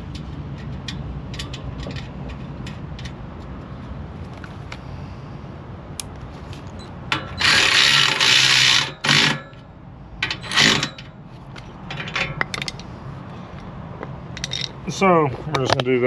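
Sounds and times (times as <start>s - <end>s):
socket ratchet clicking: 7.1s - 9.6s.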